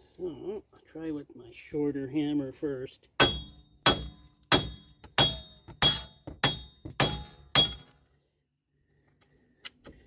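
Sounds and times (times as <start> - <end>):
hammer clanking on metal: 3.2 - 7.9.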